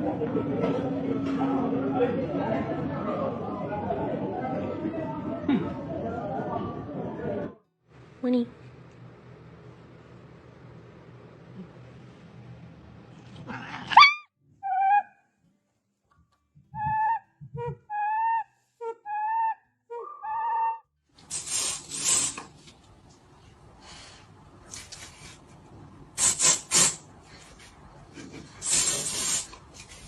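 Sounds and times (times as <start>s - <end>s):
rustling and scraping: 29.6s - 30.0s.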